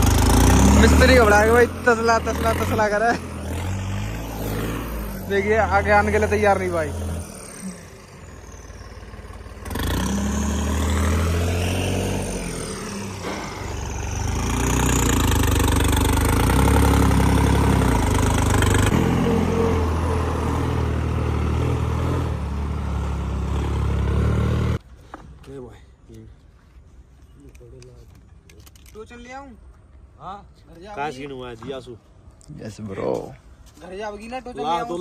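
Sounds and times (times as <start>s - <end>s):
heavy diesel engines revving: 0.0s - 24.8s.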